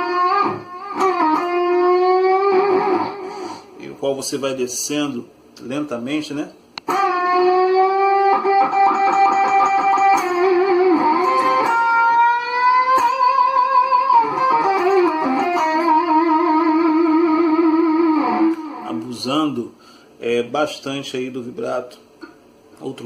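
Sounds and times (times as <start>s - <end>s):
electric guitar blues lick: 0.0s - 3.8s, 6.8s - 19.1s.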